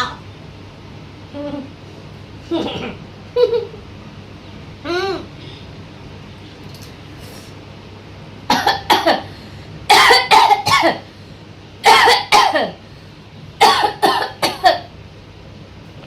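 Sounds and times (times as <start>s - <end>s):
person coughing: 2.5s - 3.0s, 8.5s - 9.3s, 9.9s - 11.1s, 11.8s - 12.8s, 13.6s - 14.9s.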